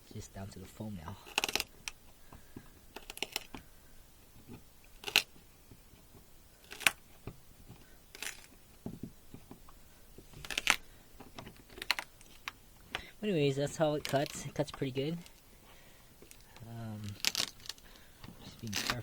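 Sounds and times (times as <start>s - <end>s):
plywood and foam tearing scrapes: 1.2s - 2.0s, 2.9s - 3.6s, 4.4s - 5.4s, 6.0s - 8.6s, 10.3s - 12.6s, 16.3s - 17.8s, 18.4s - 19.0s.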